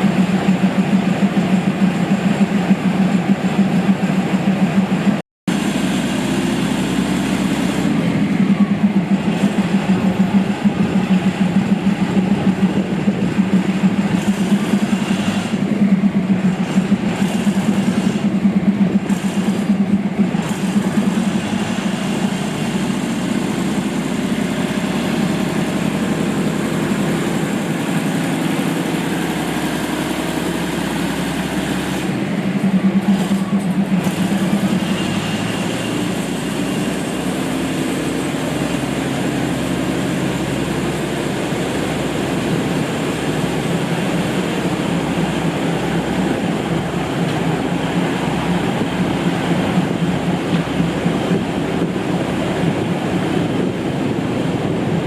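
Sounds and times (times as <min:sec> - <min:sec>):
train rumbling: 0:00.0 - 0:55.0.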